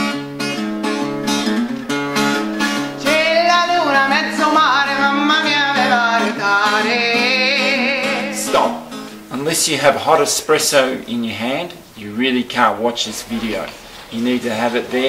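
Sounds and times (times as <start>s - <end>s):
plucked acoustic guitar: 0.0s - 15.0s
person singing: 2.5s - 8.9s.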